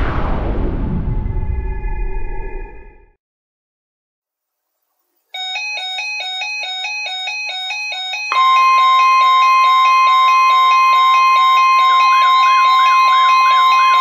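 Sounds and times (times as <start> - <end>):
loud steady high tone: 5.4 - 14.0
electronic alarm stepping between pitches: 8.3 - 14.0.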